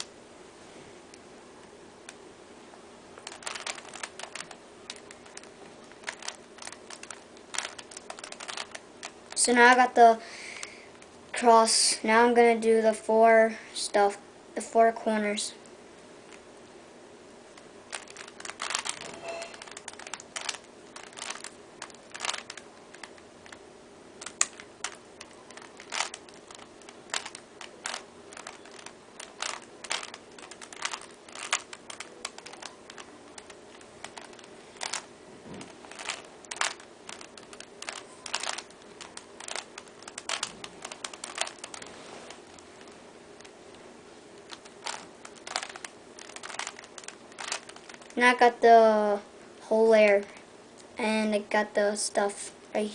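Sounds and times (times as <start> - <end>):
puzzle cube plastic clicking: 3.2 - 9.9, 17.6 - 23.6, 24.2 - 43.8, 44.4 - 48.3.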